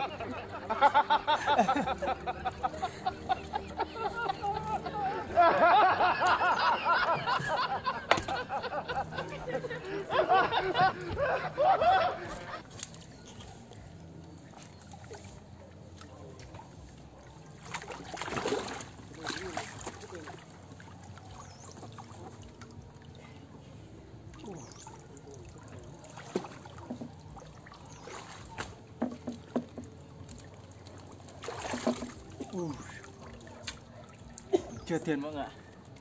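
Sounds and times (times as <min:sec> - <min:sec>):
water sloshing and splashing: 0:00.0 - 0:36.0
sharp splashes or knocks: 0:17.6 - 0:20.1, 0:31.4 - 0:32.5.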